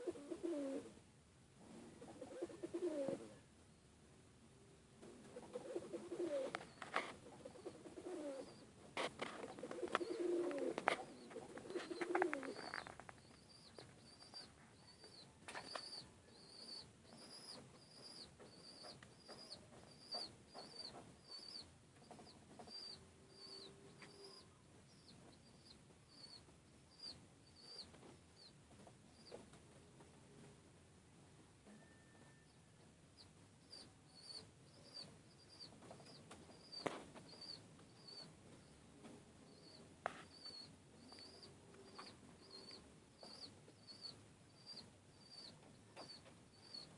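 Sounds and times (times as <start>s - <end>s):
pigeons cooing: 0.0s - 1.0s, 2.0s - 3.4s, 5.2s - 8.7s, 9.4s - 12.9s, 39.5s - 46.9s.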